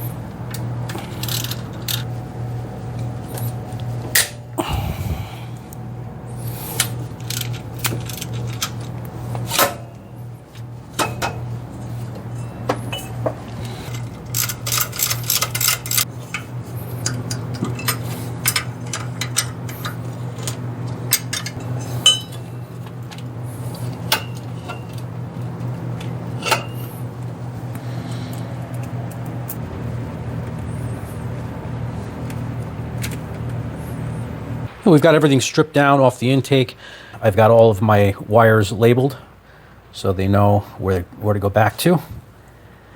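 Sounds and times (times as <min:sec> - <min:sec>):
steady low hum: 0:00.0 - 0:42.9
hand tools clinking on metal: 0:17.0 - 0:22.6, 0:26.4 - 0:26.9.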